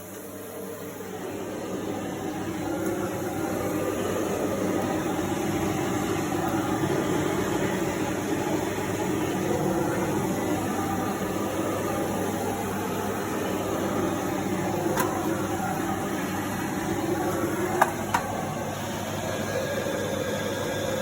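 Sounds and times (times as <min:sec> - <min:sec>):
vacuum cleaner running: 0:00.0 - 0:21.0.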